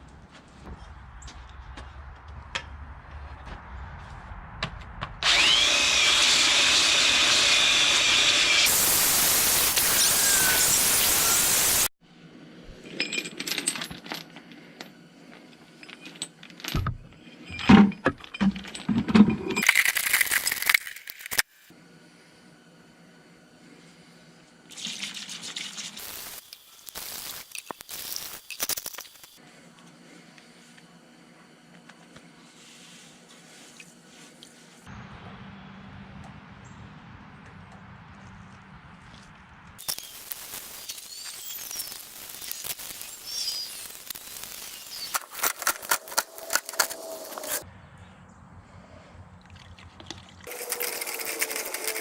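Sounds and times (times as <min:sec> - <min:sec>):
power tool running: 0:05.2 - 0:11.9, 0:39.8 - 0:47.6, 0:50.5 - 0:52.0
knocks and clatter: 0:16.6 - 0:19.6.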